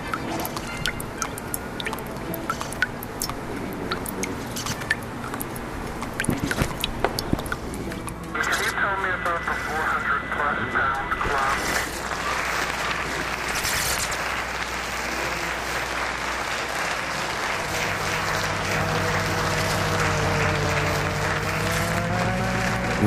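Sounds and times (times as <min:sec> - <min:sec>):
low steady hum: 0:00.0 - 0:23.0
clapping noise: 0:12.0 - 0:23.0.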